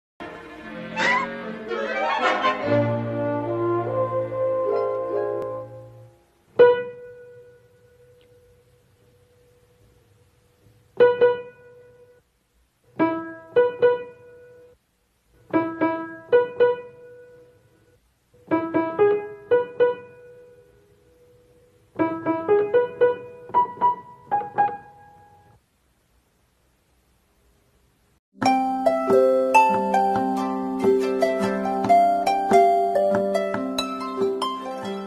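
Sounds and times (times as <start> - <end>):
instrumental music held chord: 0.2 - 8.6, 28.4 - 35.0
piano notes: 0.2 - 8.6, 11.0 - 12.2, 13.0 - 14.8, 15.5 - 17.6, 18.4 - 25.6, 28.4 - 35.0.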